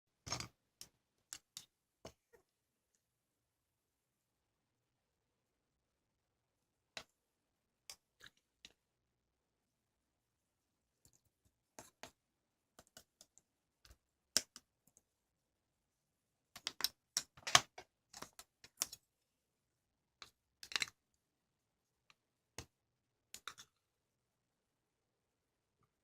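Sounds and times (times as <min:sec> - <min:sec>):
clicks of small objects handled: 0:00.3 - 0:02.2, 0:16.6 - 0:19.0, 0:20.2 - 0:21.0, 0:23.4 - 0:23.8.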